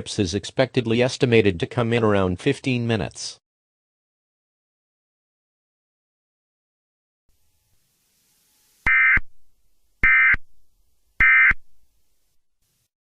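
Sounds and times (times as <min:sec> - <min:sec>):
digital data tone bursts: 0:08.8 - 0:09.3, 0:10.0 - 0:10.4, 0:11.2 - 0:11.6.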